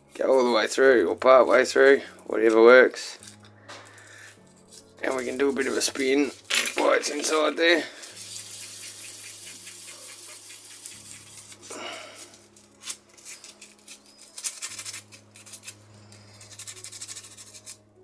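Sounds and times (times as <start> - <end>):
abrasive paper rasping in metal hole: 12.8 - 17.8.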